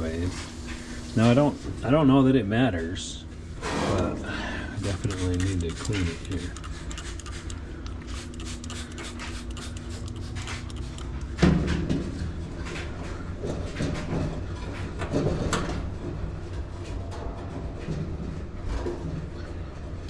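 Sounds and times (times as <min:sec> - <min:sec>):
steady low hum: 0:00.0 - 0:20.0.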